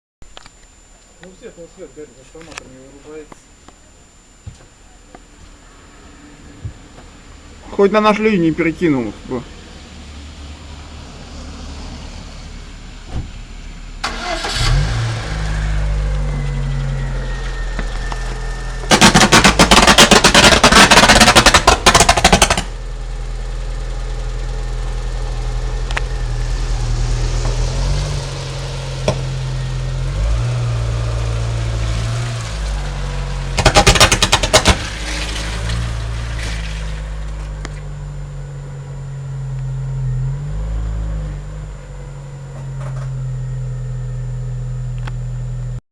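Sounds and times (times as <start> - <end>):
electrical buzz: 13.0 - 22.8, 25.4 - 45.8
crackling arc bursts: 16.1 - 22.8, 30.7 - 37.9.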